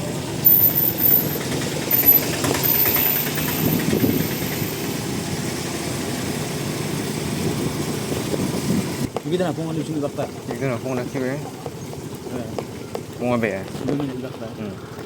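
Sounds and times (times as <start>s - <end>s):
small motorcycle engine running: 0.0s - 15.0s.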